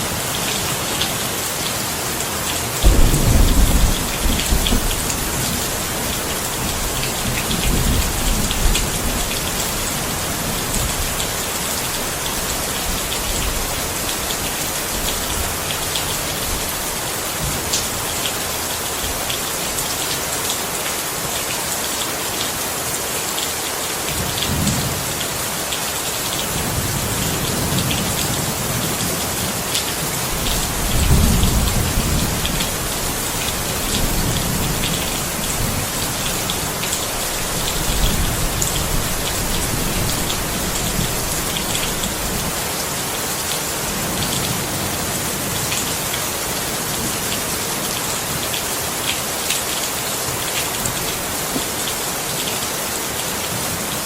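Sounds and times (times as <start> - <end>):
steady rain falling: 0.0 - 54.0
low thunder rumbles: 2.8 - 11.2, 30.4 - 42.6.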